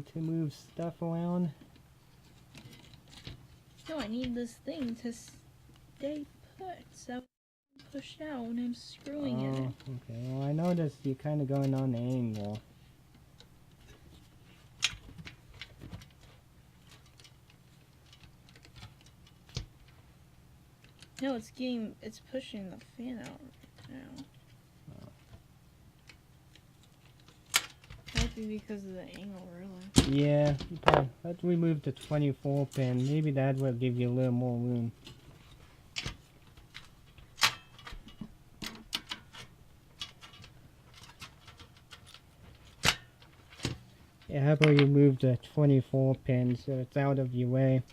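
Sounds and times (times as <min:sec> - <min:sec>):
hands handling computer parts clicking: 0:01.6 - 0:05.2, 0:08.7 - 0:20.0, 0:20.8 - 0:21.3, 0:26.0 - 0:31.1, 0:34.8 - 0:44.9.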